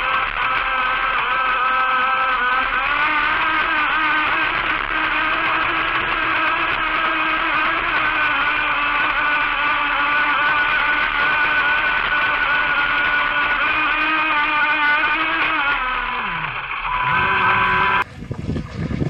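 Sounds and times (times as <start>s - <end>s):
electric motor whining: 0.0s - 18.2s.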